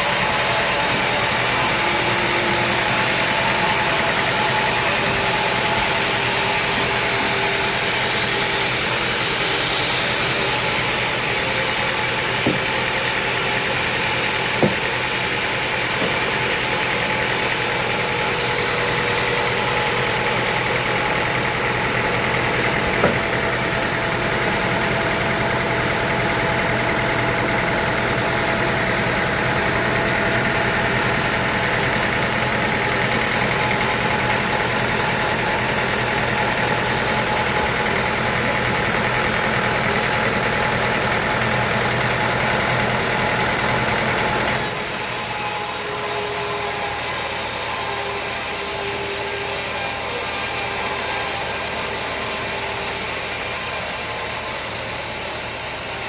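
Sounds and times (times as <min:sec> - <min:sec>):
sawmill machinery hum: 0:00.0 - 0:56.0
sharp knocks: 0:12.0 - 0:17.0, 0:22.5 - 0:23.6.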